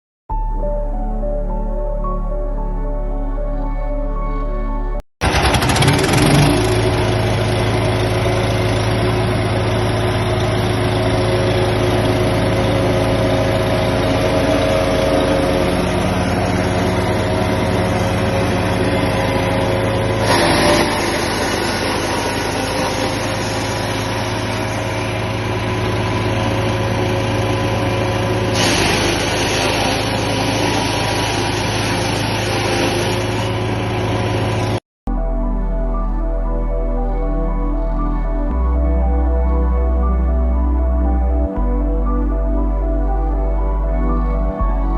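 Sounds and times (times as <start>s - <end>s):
wood chipper engine running: 5.2s - 34.8s.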